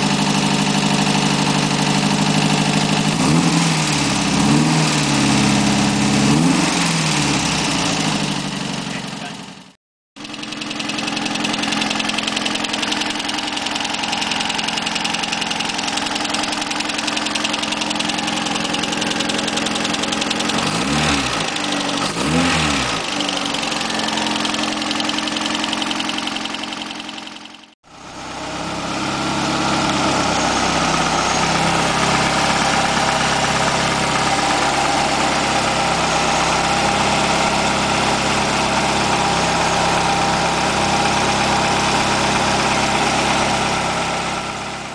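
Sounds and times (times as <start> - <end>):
car engine idling: 0.0 - 6.5, 7.1 - 44.9
engine revving blips: 10.3 - 44.6.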